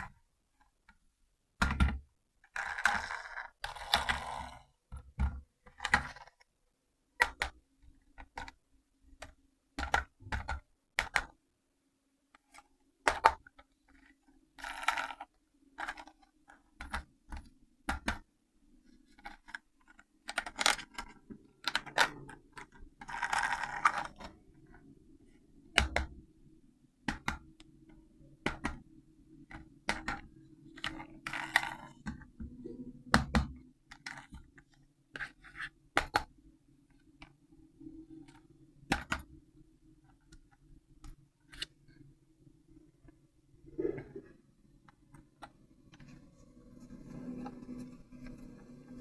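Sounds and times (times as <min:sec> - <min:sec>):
faint steady hum: 0:00.0 - 0:49.0
plastic toy clicks and knocks: 0:19.2 - 0:24.3, 0:29.5 - 0:32.3, 0:38.2 - 0:39.3.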